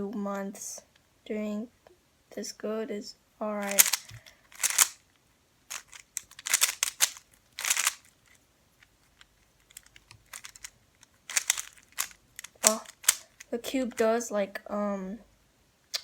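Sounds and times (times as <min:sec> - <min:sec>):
puzzle cube layers clicking: 0:03.6 - 0:05.0, 0:05.7 - 0:08.4, 0:09.0 - 0:14.0.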